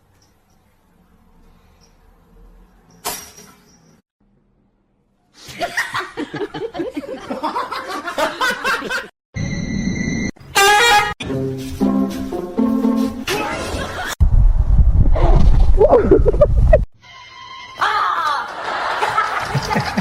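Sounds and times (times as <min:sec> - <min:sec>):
people laughing hard: 0:05.4 - 0:09.1, 0:13.3 - 0:14.2, 0:17.8 - 0:20.0.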